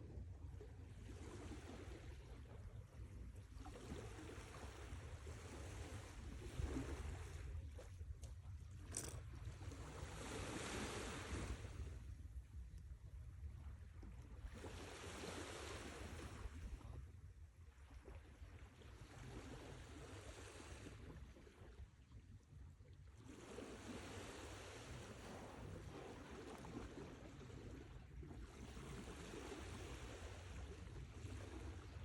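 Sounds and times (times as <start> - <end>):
faint sea surf: 8.9 - 12.5, 14.4 - 17.0, 23.3 - 32.0.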